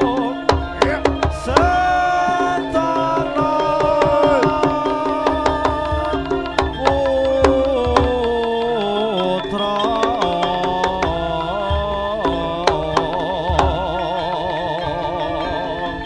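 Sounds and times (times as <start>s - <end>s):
hand drum strokes: 0.0s - 15.8s
sliding melody line: 0.0s - 16.0s.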